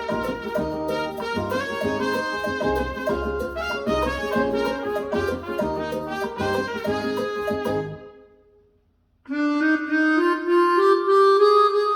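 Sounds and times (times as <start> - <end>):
brass jazz music through loudspeaker: 0.0 - 8.1.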